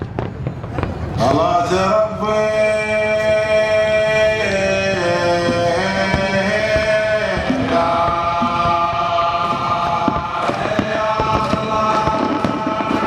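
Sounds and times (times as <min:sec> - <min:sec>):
faint fireworks bangs: 0:00.0 - 0:13.0
chant-like singing: 0:01.2 - 0:13.0.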